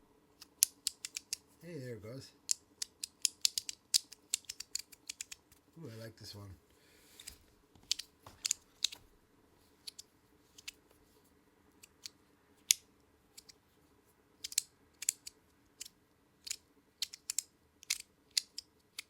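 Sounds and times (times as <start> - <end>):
metal fidget coin clicking: 0.4 - 1.4, 2.5 - 5.4, 14.4 - 19.0.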